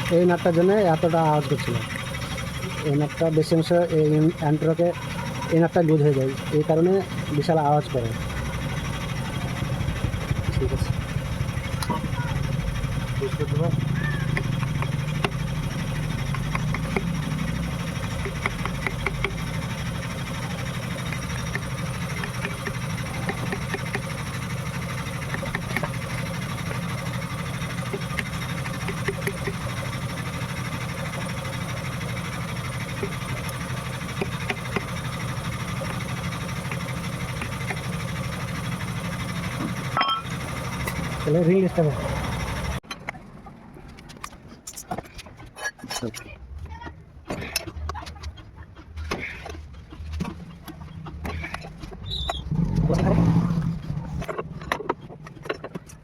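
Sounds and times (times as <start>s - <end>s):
small engine running: 0.0s - 42.8s, 49.1s - 56.0s.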